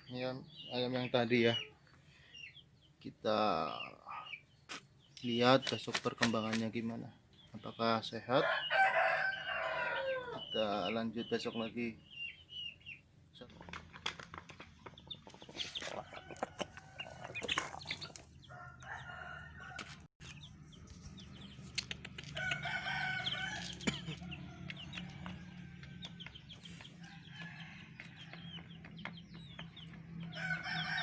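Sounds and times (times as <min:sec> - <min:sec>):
small birds chirping: 0:00.0 - 0:31.0
roosters crowing: 0:08.2 - 0:11.0, 0:15.4 - 0:20.1, 0:22.2 - 0:31.0
chickens clucking: 0:08.7 - 0:31.0.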